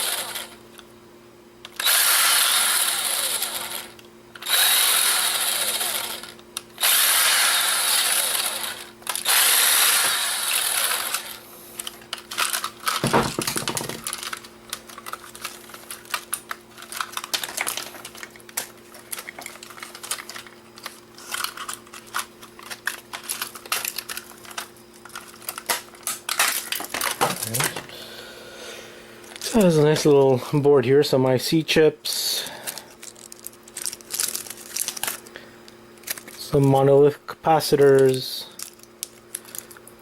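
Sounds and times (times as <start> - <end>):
electric screwdriver running: 0.0 - 0.6, 1.7 - 11.4.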